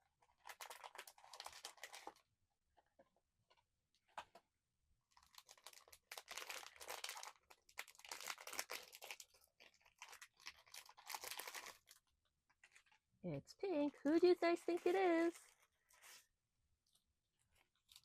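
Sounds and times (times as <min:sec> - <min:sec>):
packaging tearing and crinkling: 0:00.4 - 0:02.2, 0:05.1 - 0:12.0.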